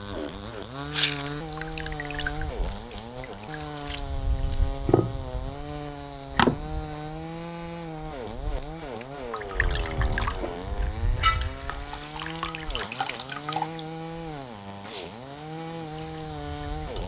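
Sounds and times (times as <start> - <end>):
small motor humming: 0.0 - 17.0
sharp knocks: 4.7 - 5.8, 6.4 - 6.9.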